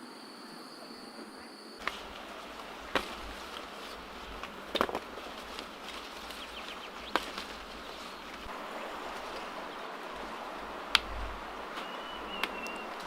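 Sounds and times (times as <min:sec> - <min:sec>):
hiss-like background: 0:00.0 - 0:13.0
thin high whistle: 0:11.8 - 0:12.9.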